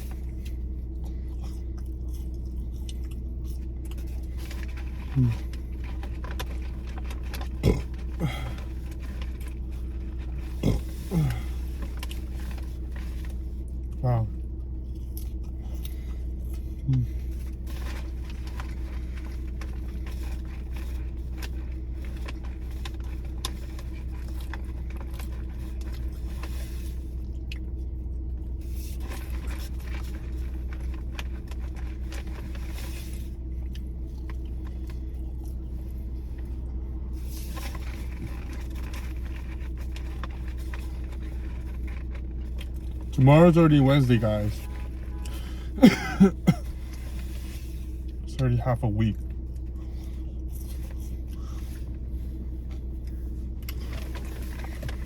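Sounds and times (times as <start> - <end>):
person chewing: 0.0 - 26.6, 27.2 - 28.3, 28.9 - 36.7
steady low hum: 0.0 - 55.0
food packaging rustling: 3.6 - 13.7, 17.4 - 27.1, 28.6 - 35.0, 37.2 - 45.6, 50.6 - 55.0.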